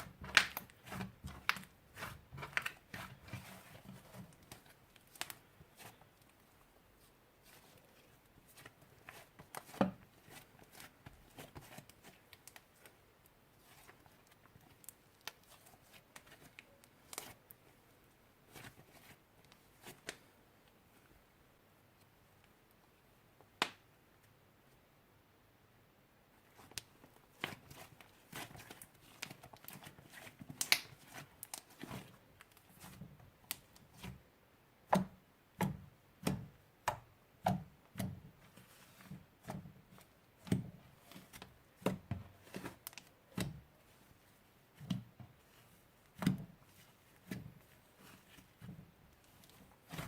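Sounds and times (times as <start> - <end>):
slime squished by hand: 0.0 - 6.0.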